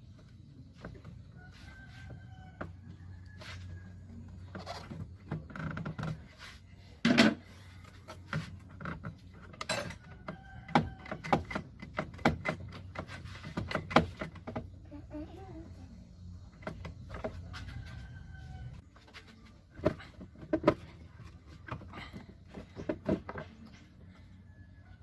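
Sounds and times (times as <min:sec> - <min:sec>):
hand tools clicking and knocking: 0:07.1 - 0:14.8.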